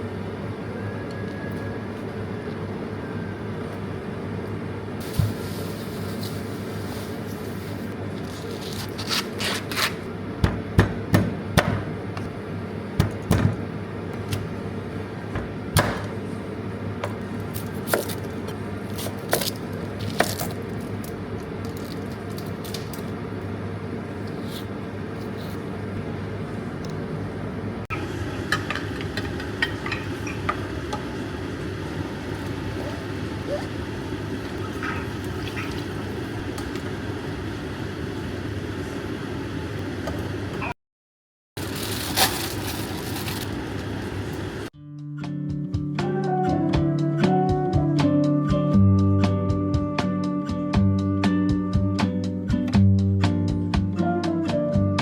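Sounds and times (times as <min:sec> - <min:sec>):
steady low hum: 0:00.0 - 0:40.8.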